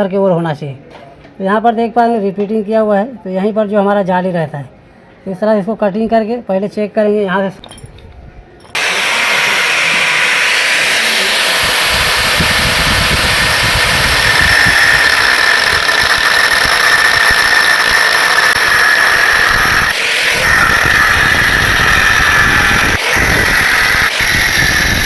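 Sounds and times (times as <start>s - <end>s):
angle grinder cutting metal: 8.8s - 25.0s.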